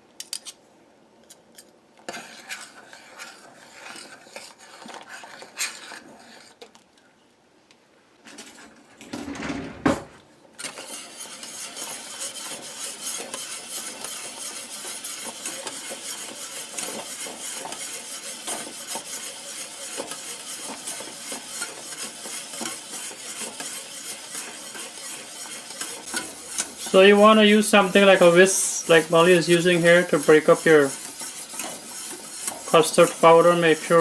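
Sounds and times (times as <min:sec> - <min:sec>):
wire whisk beating: 0:10.6 - 0:34.0.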